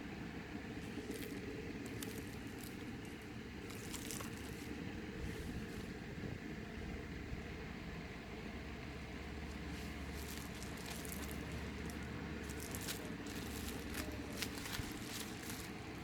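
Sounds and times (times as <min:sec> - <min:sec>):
steady low hum: 0:00.0 - 0:16.0
packaging crackling and rustling: 0:00.8 - 0:05.9, 0:09.5 - 0:16.0.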